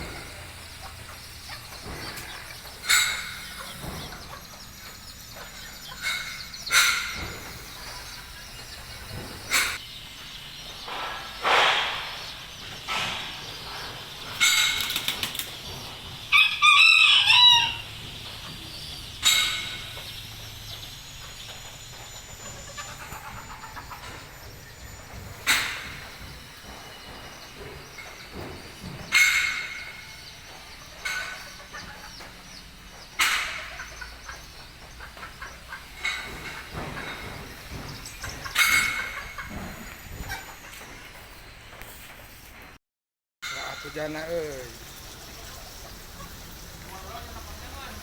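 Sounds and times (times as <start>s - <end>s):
chickens clucking: 0.0s - 42.6s, 43.7s - 48.0s
rooster crowing: 16.2s - 18.2s.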